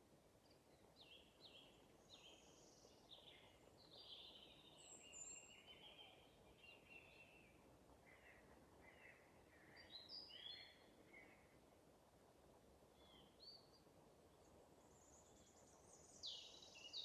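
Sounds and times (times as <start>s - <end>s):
low steady hiss: 0.0s - 17.0s
songbird chirping and warbling: 0.7s - 11.5s, 14.9s - 17.0s.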